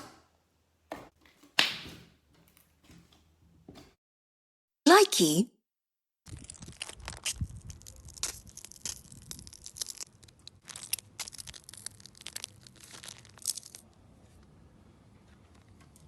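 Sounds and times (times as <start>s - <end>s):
slime crackling and popping: 6.3s - 13.9s.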